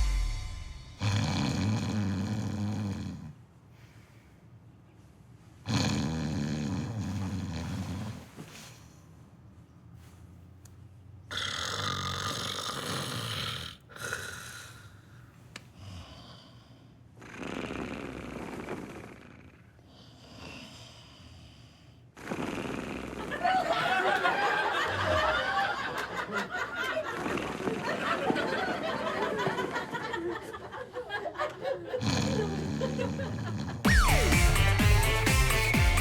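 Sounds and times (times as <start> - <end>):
exaggerated comic snoring: 0.0 - 3.4, 5.7 - 8.2, 11.3 - 15.2, 15.8 - 23.5, 27.0 - 27.9, 31.9 - 36.0.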